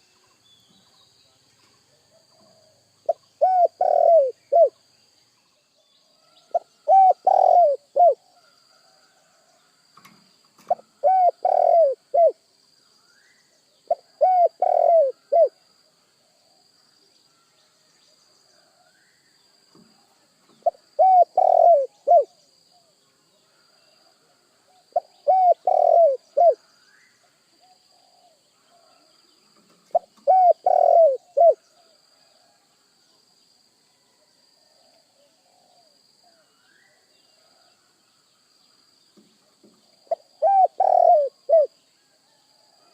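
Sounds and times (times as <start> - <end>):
dove cooing: 2.1 - 4.8, 6.5 - 8.3, 10.6 - 12.4, 13.9 - 15.6, 20.6 - 22.3, 25.0 - 26.6, 29.9 - 31.9, 40.0 - 41.7.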